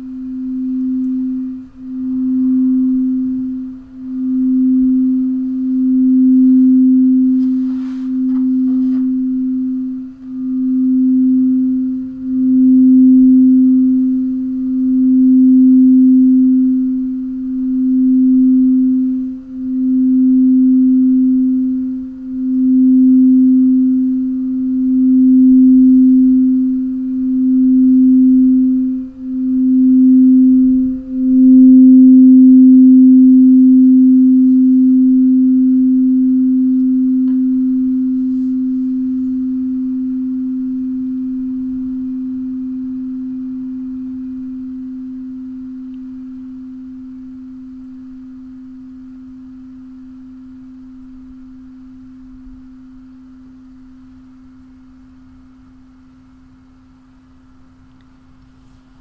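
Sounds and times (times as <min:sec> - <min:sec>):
crystal singing bowl ringing: 0:00.0 - 0:57.8
soft rustle: 0:06.9 - 0:09.6, 0:34.3 - 0:35.0, 0:37.4 - 0:39.6, 0:57.9 - 0:59.0.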